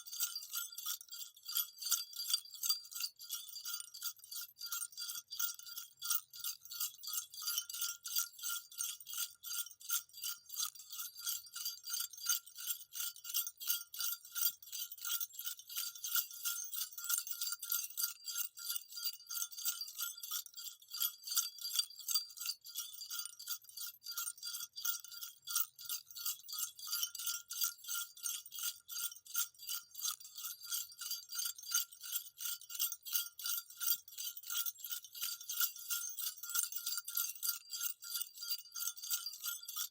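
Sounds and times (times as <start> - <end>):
jingle bells shaken: 0.0 - 39.9.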